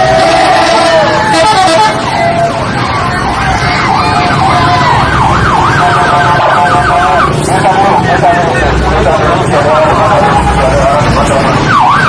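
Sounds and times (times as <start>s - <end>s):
multi-tone musical bus horn: 0.0s - 2.5s.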